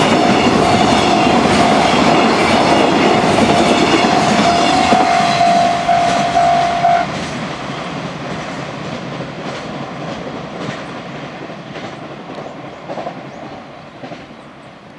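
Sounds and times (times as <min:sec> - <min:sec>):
level-crossing alarm ringing: 0:00.0 - 0:07.2.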